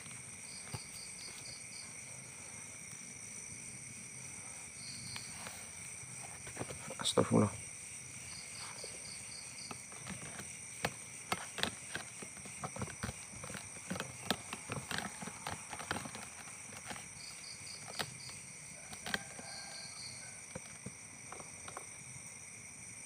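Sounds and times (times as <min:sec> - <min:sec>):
night insects shrilling: 0:00.0 - 0:23.0
sharp snaps and crackles: 0:09.6 - 0:21.9.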